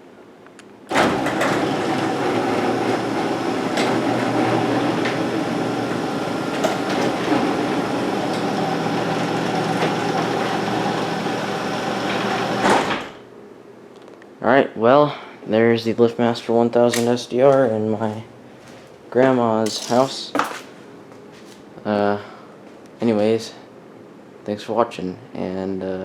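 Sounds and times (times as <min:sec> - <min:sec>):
garage door opener running: 0:00.9 - 0:13.3.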